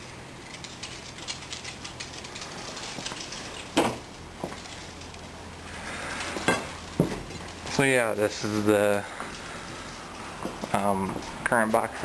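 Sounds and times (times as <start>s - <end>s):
handling noise: 0.0s - 11.9s
steady low hum: 0.0s - 12.0s.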